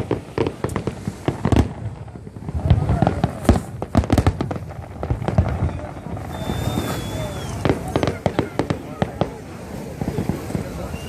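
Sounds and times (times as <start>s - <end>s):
fireworks banging and crackling: 0.0s - 11.0s
whistle of rising firework: 5.6s - 8.4s, 10.2s - 11.0s.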